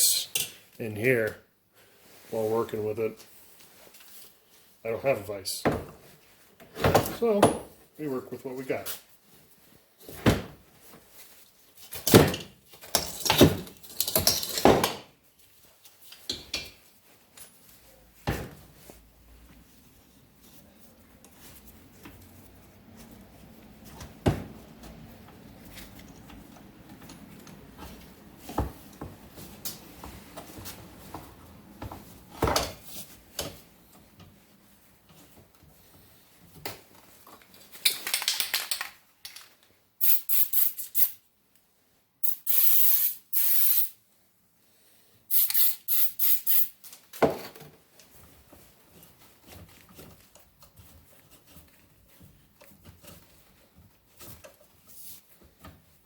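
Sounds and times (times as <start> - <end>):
hissing spray bursts: 40.0 - 41.2, 42.2 - 44.0, 45.3 - 46.8.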